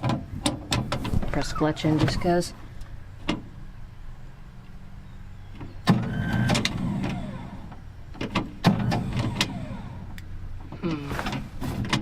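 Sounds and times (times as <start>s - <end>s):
starter motor cranking engine: 5.8s - 12.0s.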